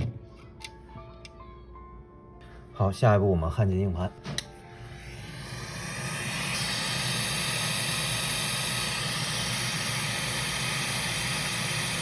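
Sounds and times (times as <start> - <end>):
hot-air blower hissing: 4.2 - 12.0.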